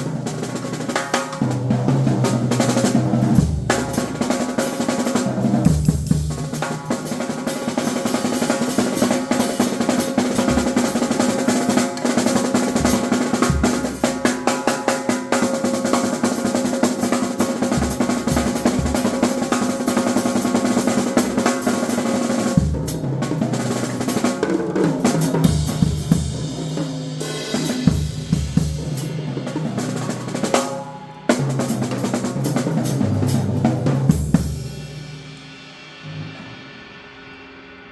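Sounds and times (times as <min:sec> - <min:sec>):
snare rolls and rimshots: 0:00.3 - 0:27.8
cymbals ringing: 0:06.4 - 0:22.6
bass drum hits: 0:10.4 - 0:11.2, 0:17.7 - 0:19.3.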